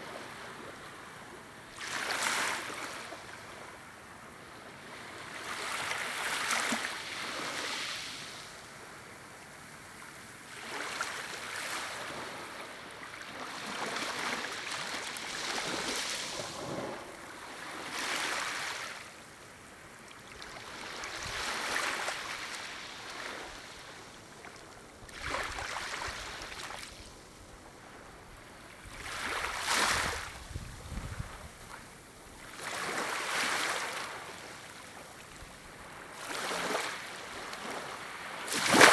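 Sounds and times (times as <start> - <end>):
waves lapping on shore: 0.0 - 4.0, 9.9 - 38.9.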